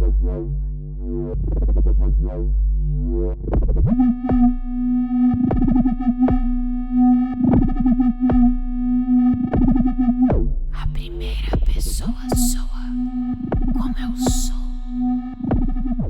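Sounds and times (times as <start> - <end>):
synthesizer music: 4.0 - 10.3, 11.3 - 16.0.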